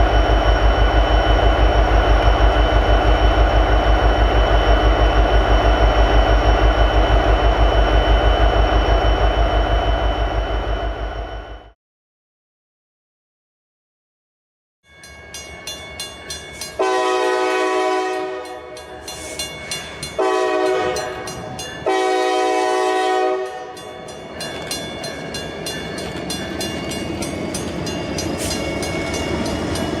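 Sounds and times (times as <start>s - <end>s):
train rumbling past: 0.0s - 11.8s, 15.0s - 30.0s
locomotive air horn blasts: 16.8s - 18.7s, 20.2s - 23.8s
wheels clacking on rail joints: 23.5s - 30.0s.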